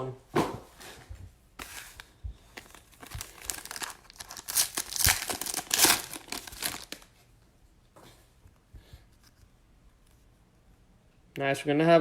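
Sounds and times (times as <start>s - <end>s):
plastic wrapper tearing and crinkling: 1.6s - 7.1s.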